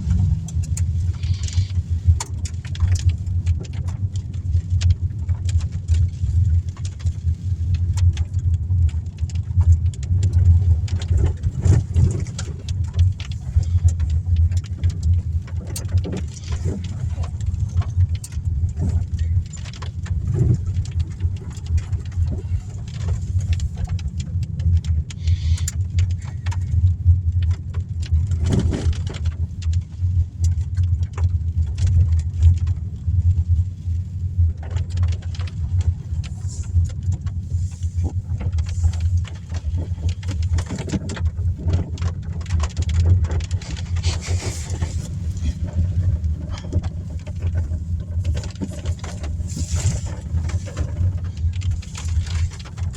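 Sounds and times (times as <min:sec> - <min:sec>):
car engine and tyres rumbling: 0:00.0 - 0:52.9
small clicks and taps: 0:00.4 - 0:33.6.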